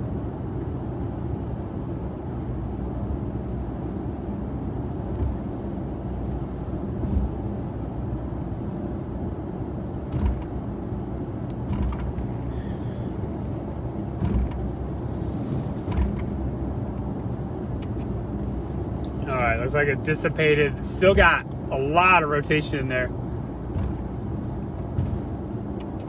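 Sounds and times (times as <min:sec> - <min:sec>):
road and engine rumble: 0:00.0 - 0:26.0
knocks from road bumps: 0:23.7 - 0:24.1.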